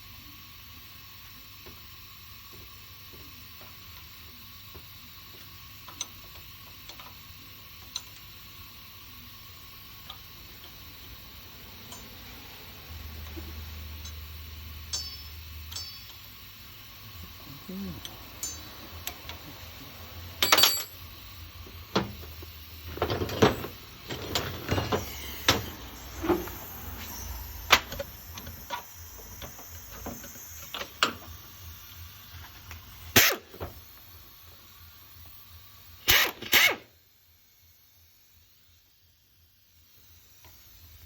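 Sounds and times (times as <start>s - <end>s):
tools and metal parts clanking: 20.4s - 21.0s, 23.0s - 25.6s.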